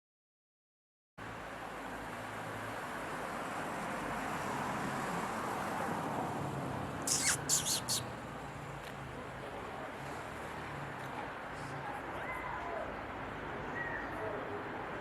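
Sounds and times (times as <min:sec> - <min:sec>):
small animal squeaking: 0:07.1 - 0:08.1.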